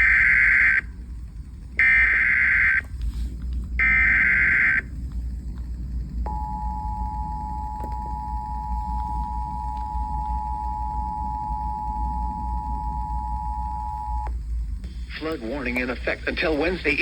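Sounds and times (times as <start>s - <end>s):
buzzy data bursts: 0.0s - 1.0s, 1.8s - 2.8s, 3.8s - 4.9s
two-tone attention signal: 6.3s - 14.3s.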